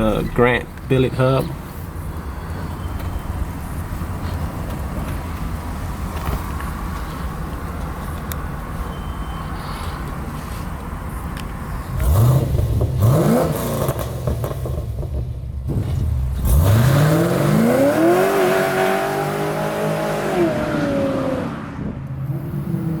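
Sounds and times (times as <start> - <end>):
car engine revving: 11.9 - 23.0.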